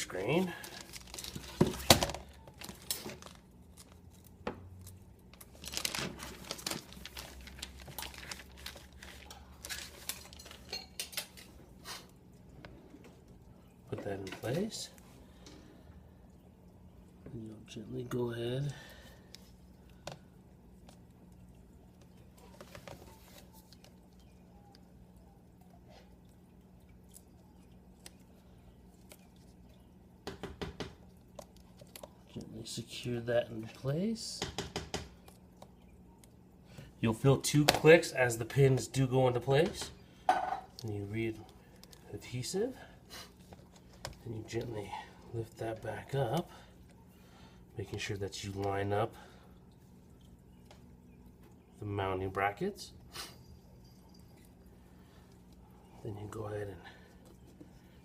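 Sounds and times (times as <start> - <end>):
low steady hum: 0.0 - 58.0
packaging crinkles and knocks: 0.6 - 4.0, 5.4 - 10.6.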